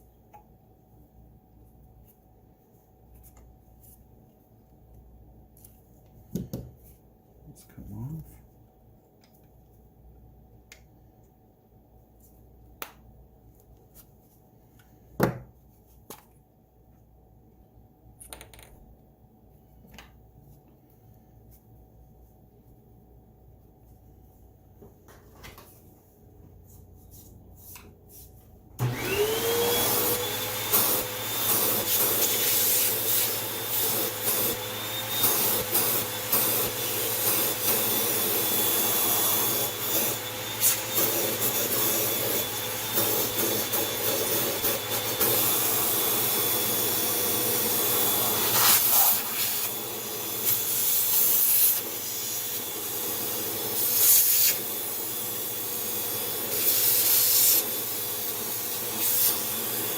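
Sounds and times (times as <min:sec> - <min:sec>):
vacuum rubbing and scraping surface: 0:28.8 - 0:50.4
vacuum cleaner motor whining: 0:28.8 - 0:59.9.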